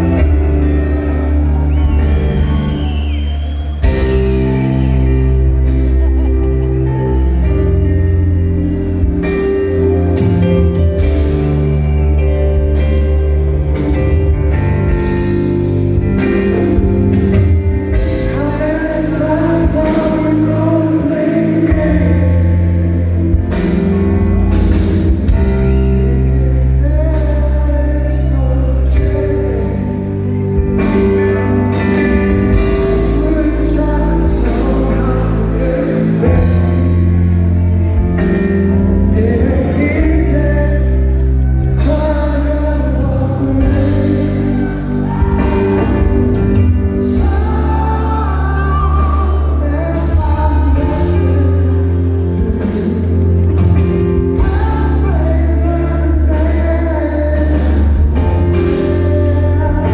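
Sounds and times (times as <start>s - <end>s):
heavy sustained bass: 0.0s - 59.9s
rock band playing live: 0.0s - 59.9s
man singing lead vocal: 13.8s - 59.9s.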